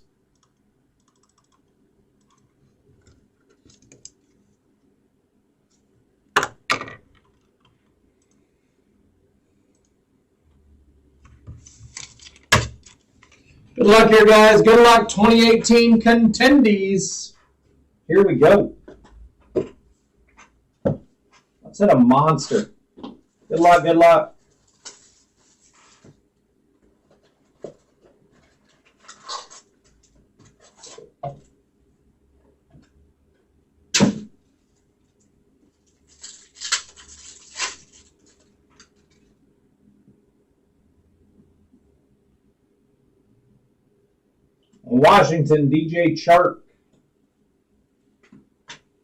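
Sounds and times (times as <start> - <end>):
computer keyboard typing: 0.3 - 4.2
card wrappers rustling: 36.0 - 39.1.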